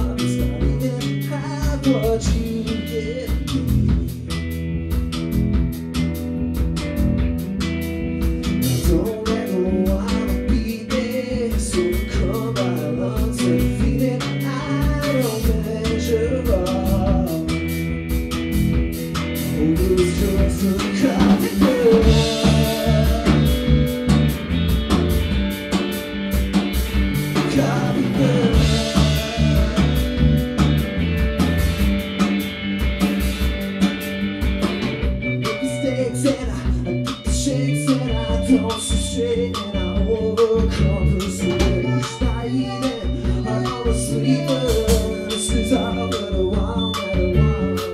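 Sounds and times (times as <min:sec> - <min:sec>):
person singing: 0:00.0 - 0:04.4, 0:08.6 - 0:17.8, 0:19.5 - 0:24.6, 0:27.3 - 0:30.8, 0:35.3 - 0:47.9
band playing a song: 0:00.0 - 0:47.9.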